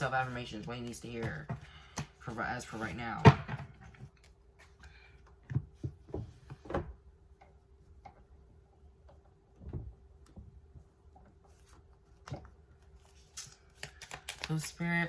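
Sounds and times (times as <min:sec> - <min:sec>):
faint steady hum: 0:00.0 - 0:15.0
cards shuffling clicks: 0:13.0 - 0:14.8.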